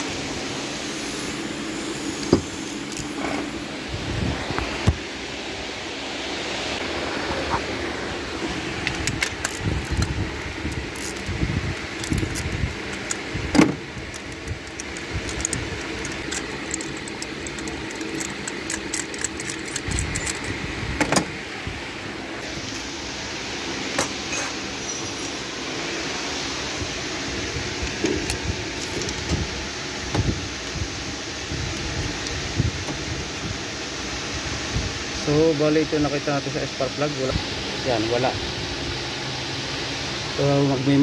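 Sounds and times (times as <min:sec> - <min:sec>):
steady background hum: 0:00.0 - 0:41.0
metal tools clinking: 0:12.0 - 0:13.3, 0:14.1 - 0:20.6, 0:24.0 - 0:25.4.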